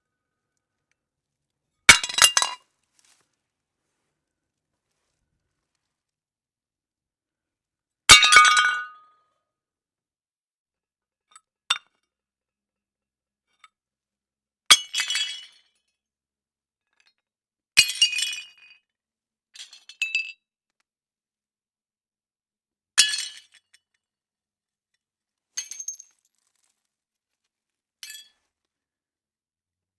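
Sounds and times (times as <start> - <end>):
glass breaking: 1.9 - 2.6.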